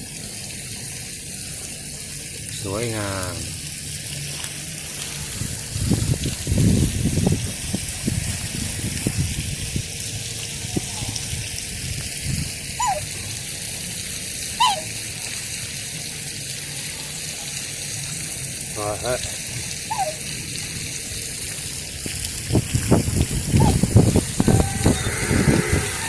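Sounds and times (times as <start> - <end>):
running water: 0.0 - 26.0
low rumbling: 21.8 - 26.0.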